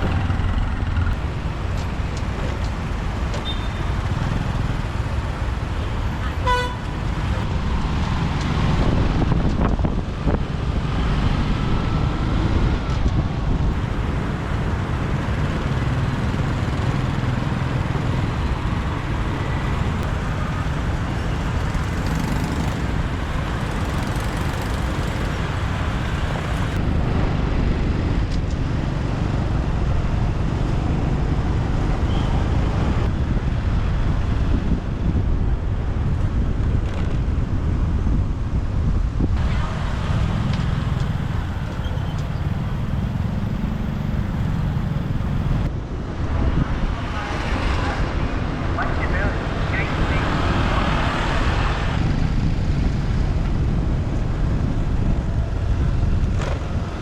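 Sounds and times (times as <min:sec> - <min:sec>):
heavy low rumble: 0:00.0 - 0:08.2, 0:13.2 - 0:22.0
engines and tyres humming: 0:00.0 - 0:57.0.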